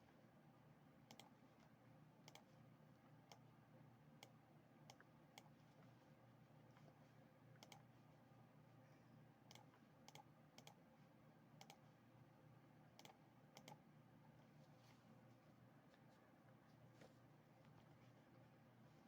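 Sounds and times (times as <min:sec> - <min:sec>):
faint steady hum: 0:00.0 - 0:19.0
computer mouse clicking: 0:01.1 - 0:02.5, 0:04.2 - 0:05.6, 0:07.6 - 0:07.9, 0:09.5 - 0:10.8, 0:11.6 - 0:11.8, 0:13.0 - 0:13.8.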